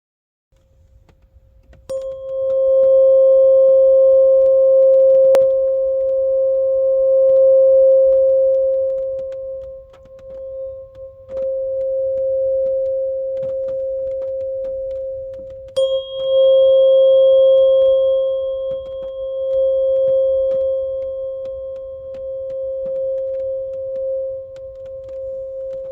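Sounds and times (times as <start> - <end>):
tuning fork ringing: 1.9 - 25.9
raindrops ticking: 8.5 - 15.8.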